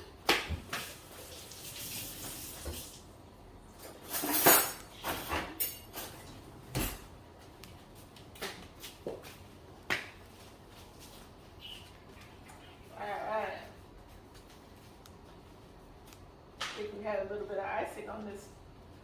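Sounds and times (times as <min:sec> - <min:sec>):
kitchen utensils and dishes clinking: 0:03.8 - 0:07.0
loud clatter of dishes: 0:03.9 - 0:07.0.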